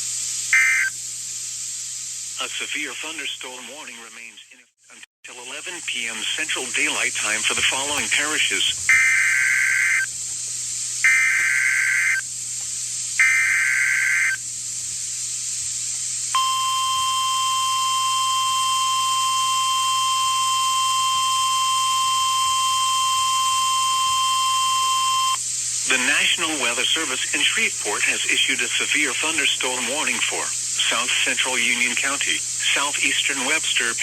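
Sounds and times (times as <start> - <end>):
screeching digital data bursts: 0.5 - 1.0, 6.0 - 10.2, 10.8 - 12.3, 13.2 - 14.4, 16.3 - 33.6
steady single-pitch attention tone: 16.4 - 25.4.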